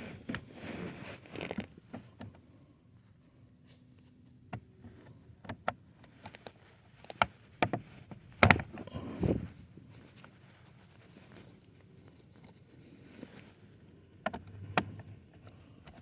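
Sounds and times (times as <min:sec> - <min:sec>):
rustling scrape: 0:00.0 - 0:01.7.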